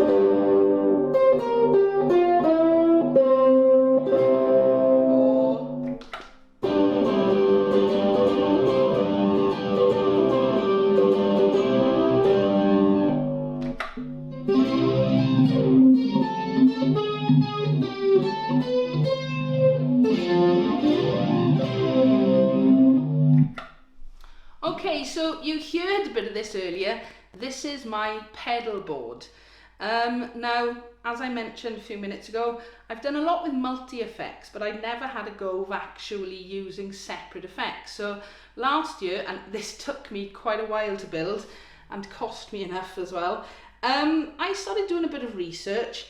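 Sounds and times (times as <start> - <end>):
electric ukulele with effects: 0.0 - 23.7.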